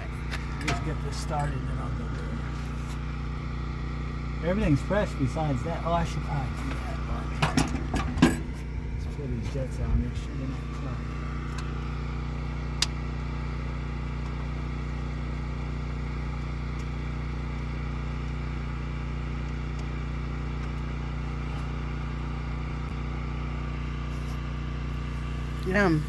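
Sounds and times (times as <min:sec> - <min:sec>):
engine idling: 0:00.0 - 0:26.0.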